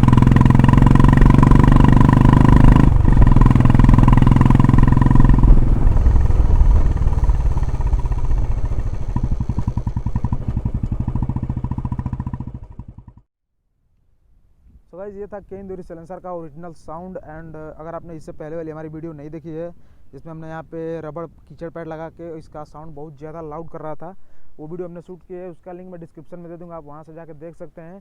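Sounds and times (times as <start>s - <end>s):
motorcycle exhaust running: 0.0s - 13.2s.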